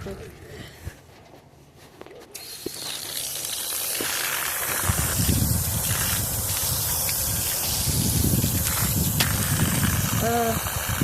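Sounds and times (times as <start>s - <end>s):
water spraying: 2.4s - 11.0s.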